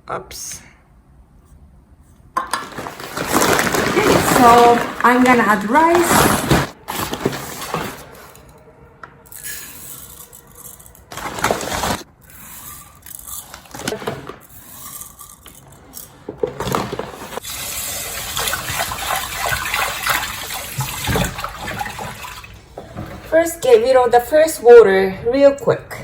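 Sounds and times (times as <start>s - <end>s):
tap water running into a pot: 17.4s - 22.6s.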